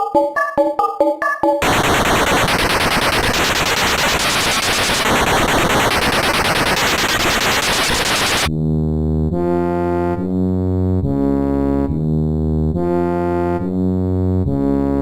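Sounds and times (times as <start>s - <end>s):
harsh distorted electronic noise: 1.6s - 8.5s.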